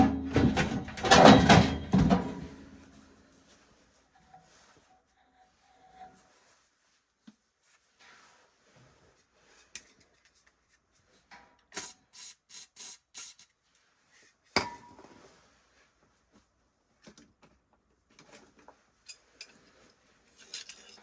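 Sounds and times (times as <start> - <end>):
tools and parts clicking: 11.8 - 13.5, 20.4 - 21.0.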